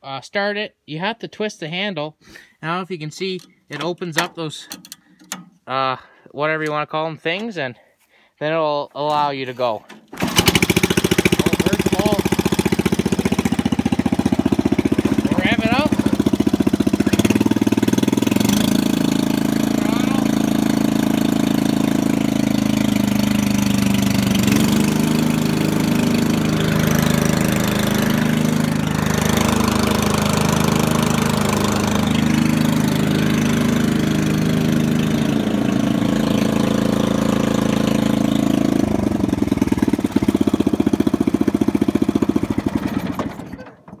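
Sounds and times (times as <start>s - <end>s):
mower engine running: 10.0s - 43.7s.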